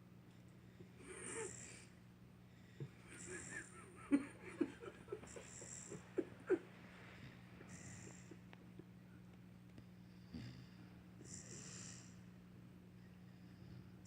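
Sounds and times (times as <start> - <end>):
puppy snoring: 1.0 - 1.9, 7.2 - 8.4, 10.2 - 12.2.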